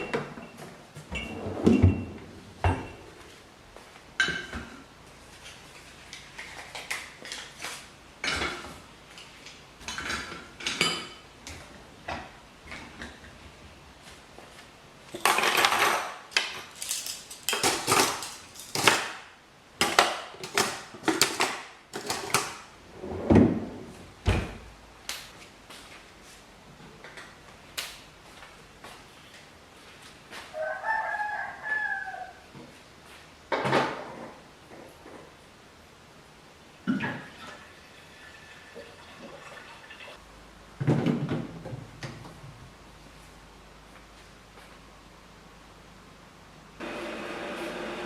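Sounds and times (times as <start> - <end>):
rooster crowing: 30.5 - 32.4.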